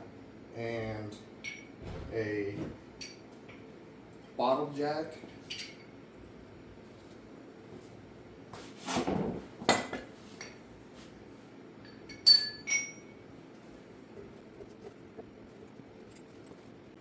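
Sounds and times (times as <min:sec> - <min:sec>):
ringing metal clinks: 0:11.8 - 0:13.2.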